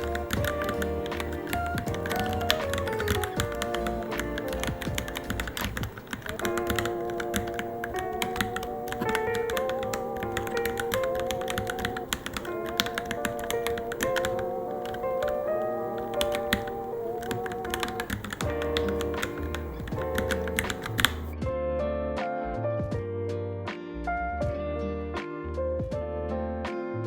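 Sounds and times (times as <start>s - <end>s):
mechanical keyboard typing: 0.0s - 21.4s
background music: 0.0s - 27.0s.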